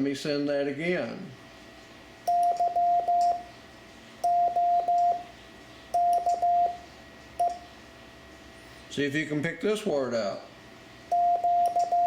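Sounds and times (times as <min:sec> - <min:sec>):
morse code beeping tone: 0:02.3 - 0:03.5, 0:04.2 - 0:05.3, 0:06.0 - 0:06.8, 0:11.1 - 0:12.0.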